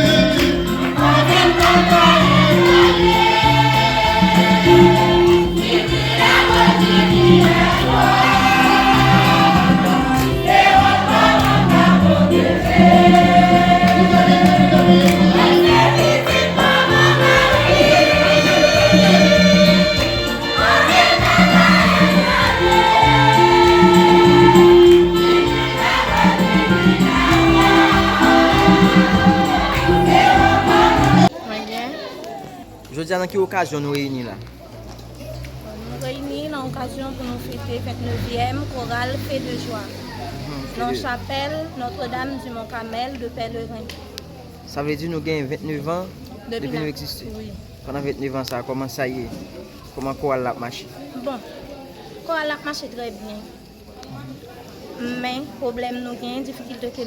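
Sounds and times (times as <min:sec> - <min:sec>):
instrumental bass line: 0:00.0 - 0:31.3
choir singing a hymn: 0:00.0 - 0:31.4.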